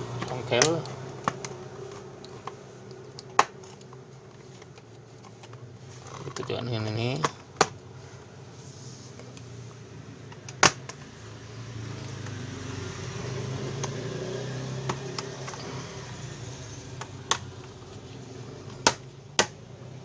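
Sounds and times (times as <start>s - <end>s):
plastic clips popping: 0.0s - 4.0s, 10.3s - 11.1s, 16.7s - 19.6s.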